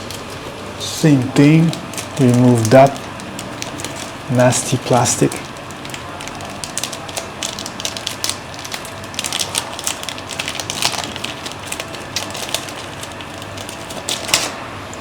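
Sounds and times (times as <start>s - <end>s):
plastic film crinkling: 0.0s - 14.8s.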